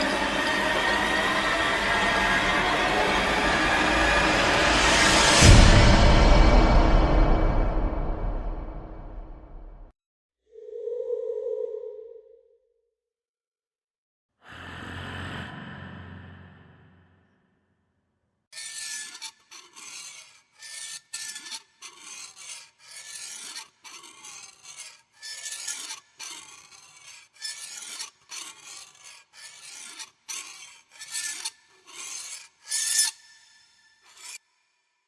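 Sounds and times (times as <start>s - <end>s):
harsh rasping scrapes: 0.0s - 6.2s, 18.6s - 34.5s.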